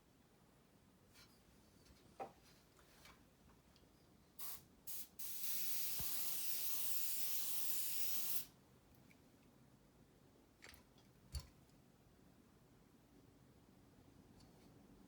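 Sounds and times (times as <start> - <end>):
aerosol can spraying: 4.4 - 8.5.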